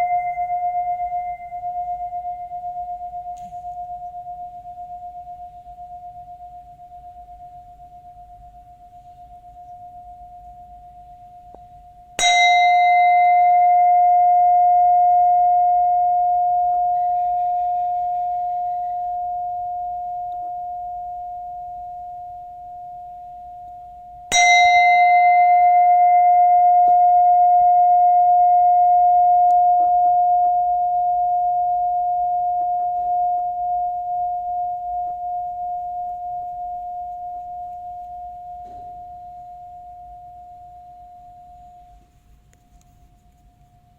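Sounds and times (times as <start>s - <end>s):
bell struck and ringing: 0.0s - 4.6s, 12.2s - 18.9s, 24.3s - 30.6s.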